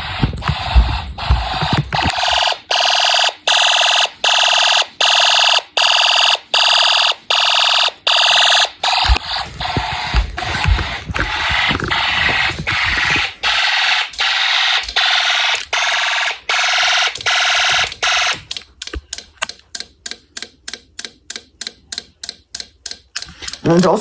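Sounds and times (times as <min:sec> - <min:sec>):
fire alarm horn buzzing: 0:02.1 - 0:09.3, 0:12.3 - 0:18.4.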